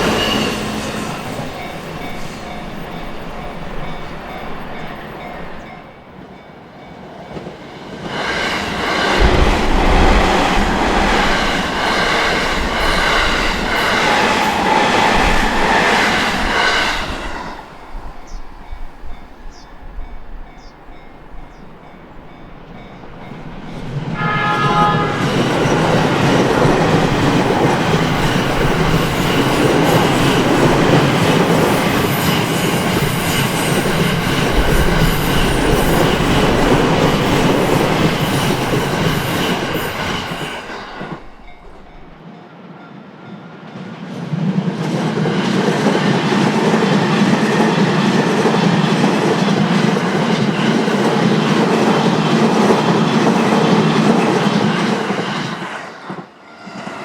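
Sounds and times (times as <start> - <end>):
train running past: 0.0 - 57.0
train horn blast: 24.2 - 25.8.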